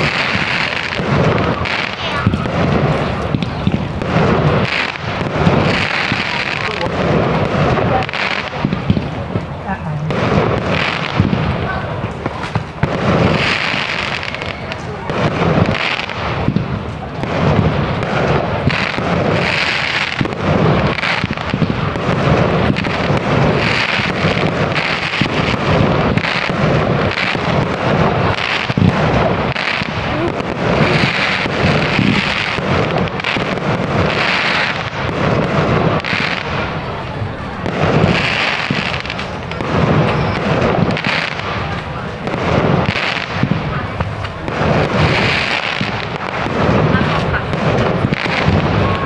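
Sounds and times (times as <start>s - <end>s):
firework crackle: 0.0s - 49.0s.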